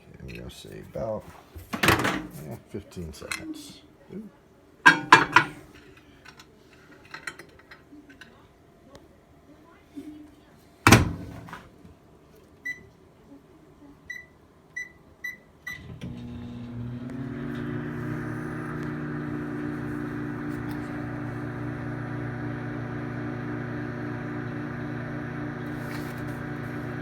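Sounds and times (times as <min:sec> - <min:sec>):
microwave humming: 0:04.9 - 0:05.7, 0:10.9 - 0:11.7, 0:15.6 - 0:27.0
microwave keypad beeping: 0:14.1 - 0:15.9.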